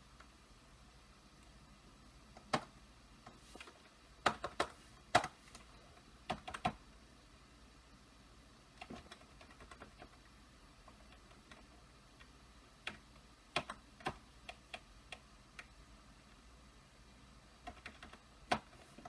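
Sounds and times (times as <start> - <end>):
keyboard keys clicking: 6.3 - 6.8, 8.8 - 15.7, 17.6 - 18.9.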